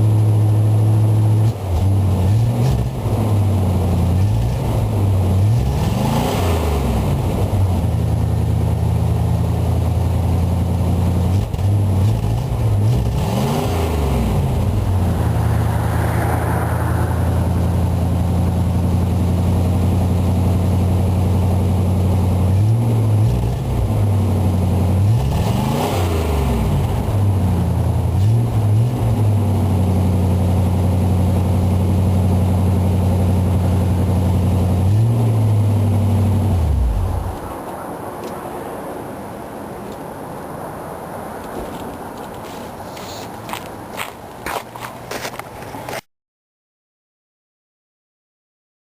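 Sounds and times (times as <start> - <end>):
engine throttle blips: 13.1 - 21.1.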